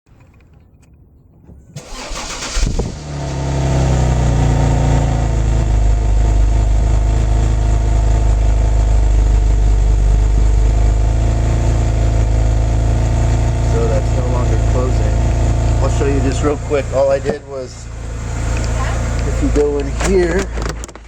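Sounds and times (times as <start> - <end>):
car engine starter cranking: 1.8 - 4.3, 13.7 - 21.0
car engine idling: 1.8 - 21.0.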